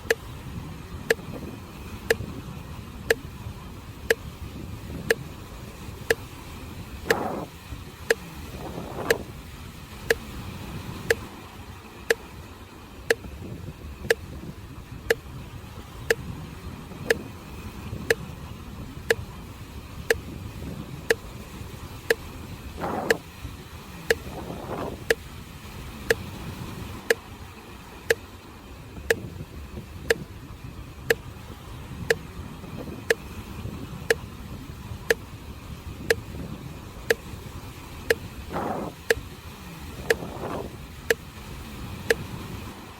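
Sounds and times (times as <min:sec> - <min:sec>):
sharp metronome ticks: 0:00.0 - 0:00.3, 0:01.1 - 0:01.3, 0:02.1 - 0:02.3, 0:07.1 - 0:07.5, 0:09.0 - 0:09.2, 0:10.0 - 0:10.3, 0:11.0 - 0:11.3, 0:13.1 - 0:13.3, 0:22.9 - 0:23.2, 0:24.1 - 0:24.3, 0:25.0 - 0:25.2, 0:30.1 - 0:30.3
sea waves on shore: 0:30.4 - 0:42.9.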